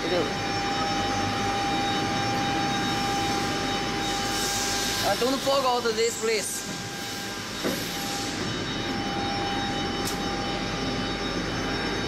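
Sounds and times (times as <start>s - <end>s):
lathe mechanical hum: 0.0s - 12.0s
thin steady whine: 0.0s - 12.0s.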